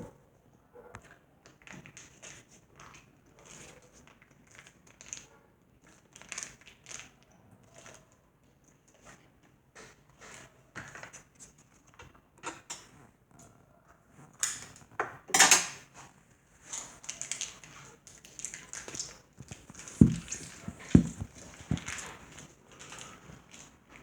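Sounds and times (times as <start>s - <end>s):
low thumps: 19.4s - 21.9s
objects clicking and scraping on table: 19.4s - 22.2s.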